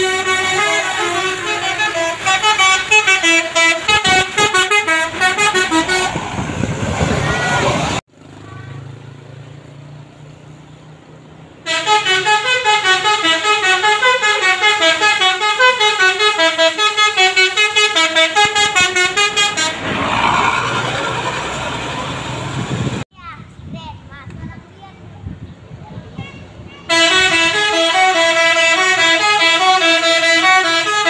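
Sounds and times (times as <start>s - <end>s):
musical bus horn tune: 0.0s - 6.7s, 11.6s - 19.9s, 26.8s - 31.0s
broad rush of noise: 5.7s - 9.1s.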